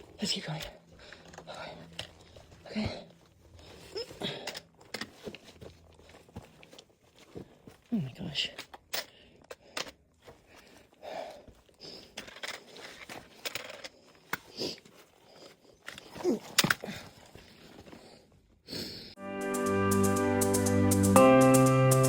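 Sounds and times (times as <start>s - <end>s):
backpack rustling: 0.8s - 8.0s, 10.1s - 18.4s
footsteps on rock: 2.1s - 7.9s.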